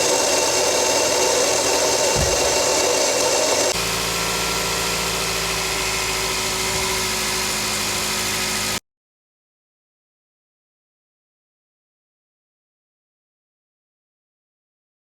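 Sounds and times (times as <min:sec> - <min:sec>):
car engine idling: 0:00.0 - 0:08.8.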